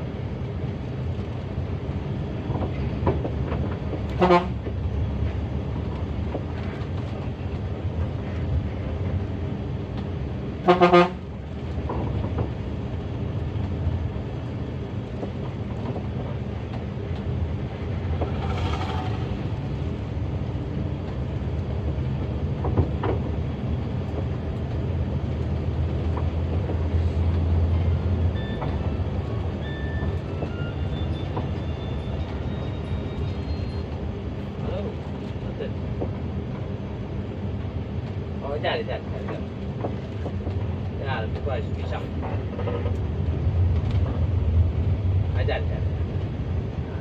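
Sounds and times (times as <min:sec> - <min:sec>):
bus engine running: 0:00.0 - 0:47.0
bus horn blast: 0:04.1 - 0:04.7, 0:10.6 - 0:11.3.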